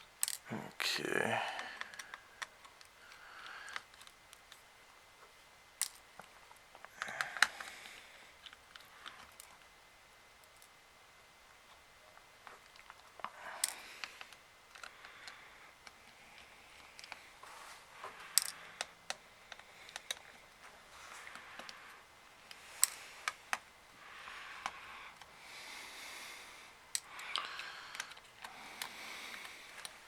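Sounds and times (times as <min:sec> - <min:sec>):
plastic parts clicking: 0:00.2 - 0:00.4, 0:01.6 - 0:04.6, 0:05.8 - 0:09.6, 0:12.5 - 0:17.2, 0:18.3 - 0:20.4, 0:22.5 - 0:23.6, 0:26.9 - 0:30.0.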